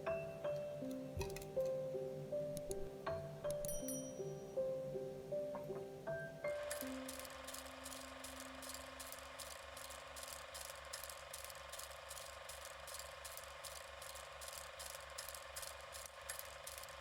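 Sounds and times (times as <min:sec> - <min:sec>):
faint mechanical ticking: 0:06.5 - 0:17.0.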